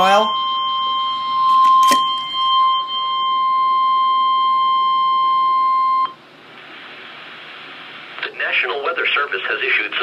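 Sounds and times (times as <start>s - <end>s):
steady high alarm tone: 0.0s - 6.2s.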